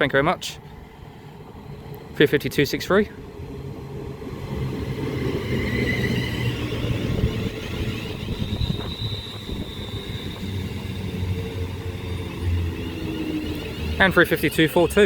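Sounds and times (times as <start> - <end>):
train wheels rumbling on rail: 0.0 - 15.0
electric motor whine: 5.2 - 15.0.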